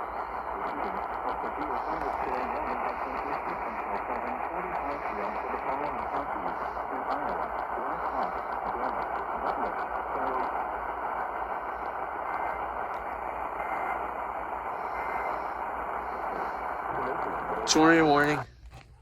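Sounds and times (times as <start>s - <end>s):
faint voice: 0.0s - 10.7s, 14.7s - 18.5s
radio static hiss: 0.0s - 19.0s.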